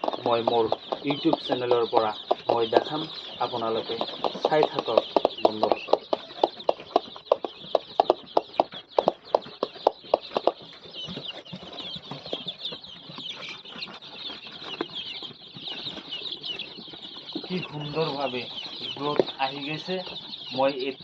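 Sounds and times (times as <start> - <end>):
sharp knocks: 0.0 - 10.6
chicks peeping: 0.0 - 21.0.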